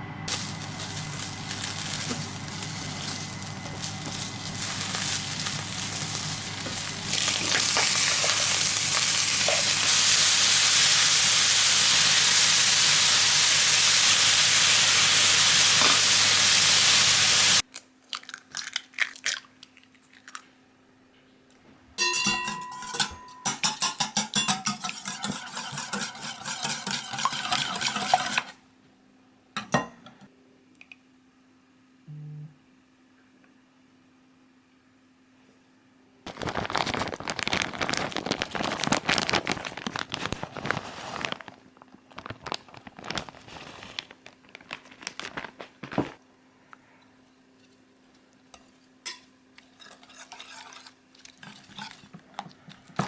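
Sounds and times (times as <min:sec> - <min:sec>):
metal utensils clinking and scraping: 0:00.3 - 0:10.4, 0:22.0 - 0:28.6, 0:48.5 - 0:53.0
food sizzling in a frying pan: 0:00.3 - 0:17.6.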